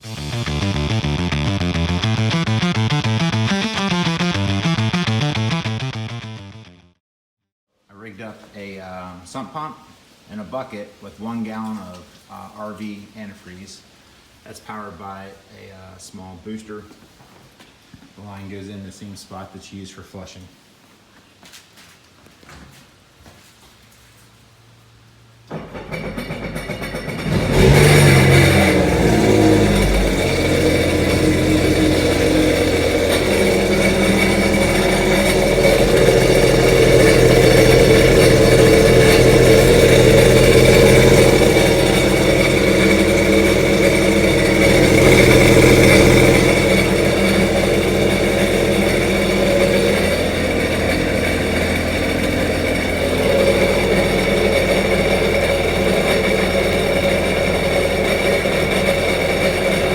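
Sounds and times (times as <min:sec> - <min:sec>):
jetski engine revving and idling: 0:00.0 - 0:05.1, 0:25.7 - 0:59.9.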